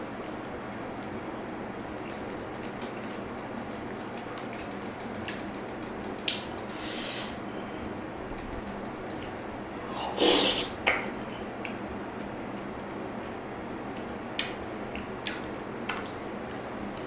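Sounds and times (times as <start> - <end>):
eating noises: 1.7 - 7.4, 13.9 - 17.0
background hiss: 6.6 - 7.4
hissing breath: 6.7 - 7.4, 9.8 - 10.7.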